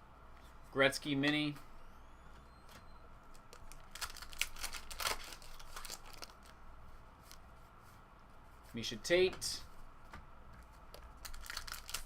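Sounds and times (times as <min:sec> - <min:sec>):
trading cards rustling: 0:03.4 - 0:06.6, 0:10.6 - 0:12.0.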